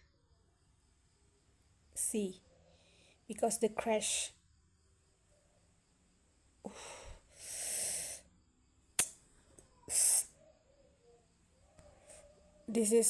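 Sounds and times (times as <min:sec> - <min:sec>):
sharp click: 0:09.0 - 0:09.2.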